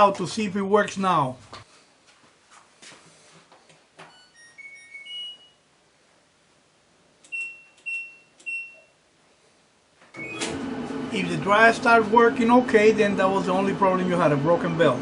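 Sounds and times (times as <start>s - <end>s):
short beeps: 7.3s - 9.0s.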